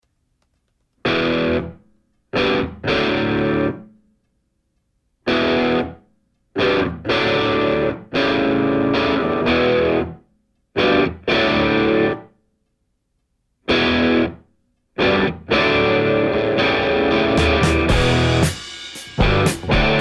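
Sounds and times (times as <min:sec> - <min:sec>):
distorted electric guitar chords: 0:01.1 - 0:01.8, 0:02.4 - 0:03.8, 0:05.3 - 0:06.0, 0:06.6 - 0:10.2, 0:10.8 - 0:12.2, 0:15.0 - 0:20.0.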